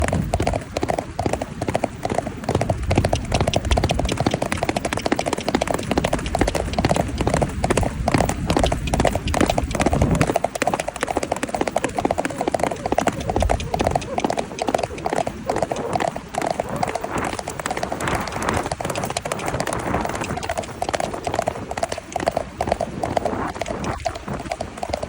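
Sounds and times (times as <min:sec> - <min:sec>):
horse hooves clip-clopping: 0:00.0 - 0:25.0.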